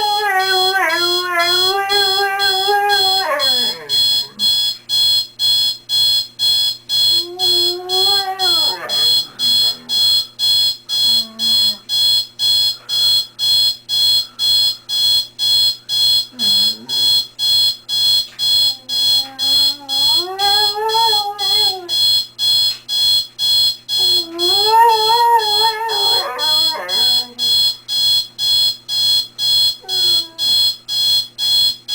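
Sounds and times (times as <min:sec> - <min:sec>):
dog howling and whining: 0:00.0 - 0:04.4, 0:07.2 - 0:09.9, 0:18.7 - 0:21.9, 0:24.1 - 0:27.4, 0:29.8 - 0:30.4
alarm clock beeping: 0:00.0 - 0:31.9.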